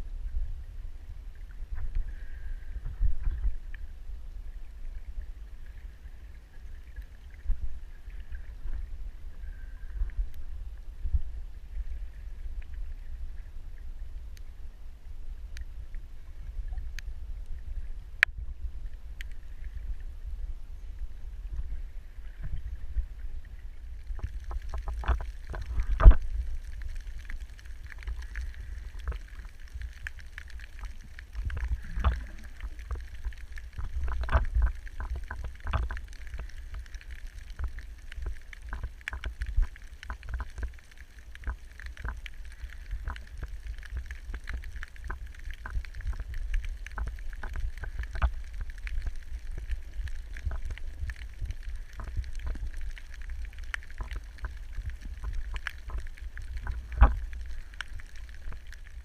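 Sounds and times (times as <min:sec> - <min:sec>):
underwater rumble of moving water: 0:00.0 - 0:59.0
sharp clicks and crackles: 0:23.9 - 0:59.0.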